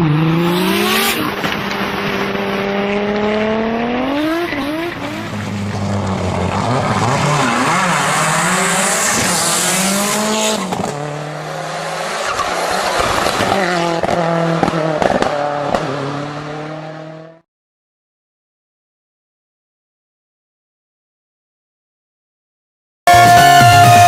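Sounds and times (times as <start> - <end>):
car engine revving hard: 0.0 - 17.4.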